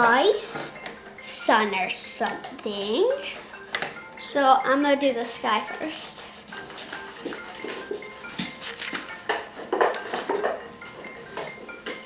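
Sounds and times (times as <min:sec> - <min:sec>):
marker scribbling on paper: 0:05.1 - 0:09.2.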